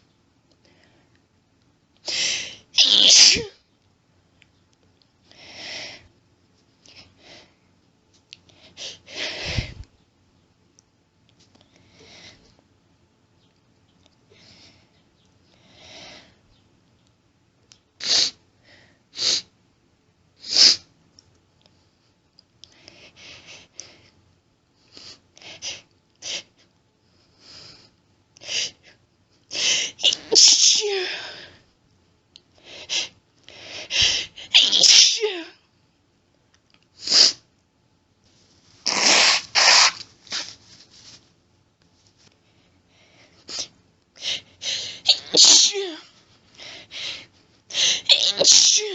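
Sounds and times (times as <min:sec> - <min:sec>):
woman sneezing: 0:02.8 - 0:03.6, 0:30.0 - 0:31.3, 0:34.4 - 0:35.6, 0:38.9 - 0:40.0, 0:45.0 - 0:46.0, 0:48.0 - 0:48.9.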